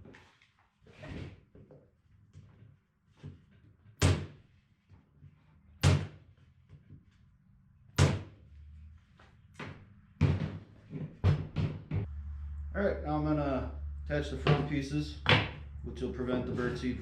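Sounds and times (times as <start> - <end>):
hammer nailing into wood: 4.0 - 4.4, 5.8 - 6.2, 8.0 - 8.3.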